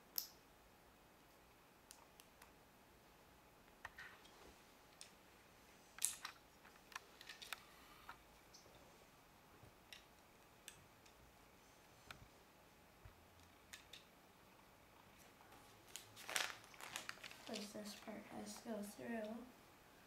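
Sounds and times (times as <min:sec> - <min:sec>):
plastic bricks clicking together: 0:13.4 - 0:14.1.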